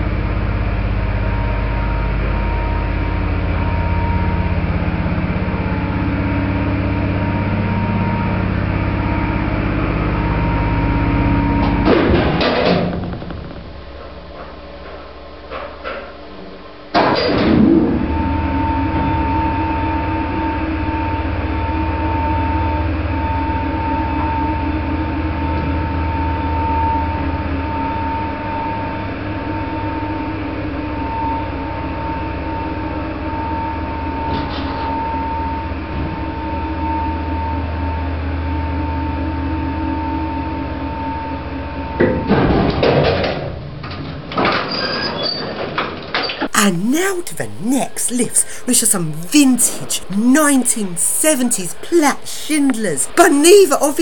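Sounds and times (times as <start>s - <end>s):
lift motor hum with whine: 0.0s - 11.9s.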